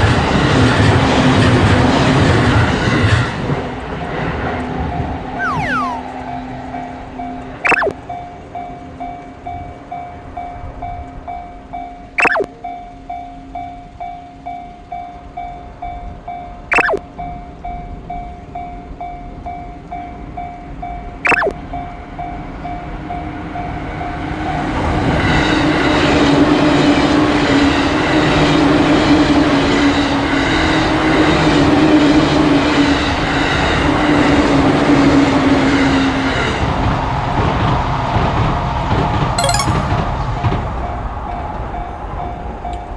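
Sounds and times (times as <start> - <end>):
short falling chirps: 5.4 - 6.0, 7.7 - 8.0, 12.2 - 12.5, 16.7 - 17.0, 21.3 - 21.5, 39.4 - 40.0
level crossing bell dinging: 39.4 - 40.0.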